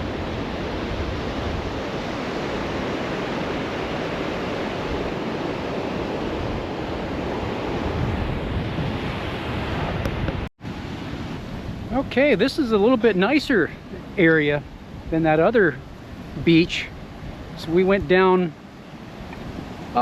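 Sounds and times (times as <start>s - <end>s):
sea waves washing onto beach: 0.0s - 20.0s
wind buffeting microphone: 0.0s - 20.0s.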